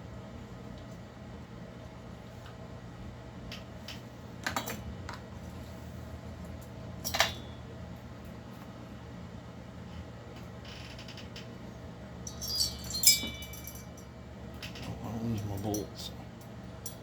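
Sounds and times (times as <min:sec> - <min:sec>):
steady low hum: 0:00.0 - 0:17.0
metal parts clattering: 0:12.3 - 0:13.9
small metal tools clinking: 0:12.3 - 0:14.1.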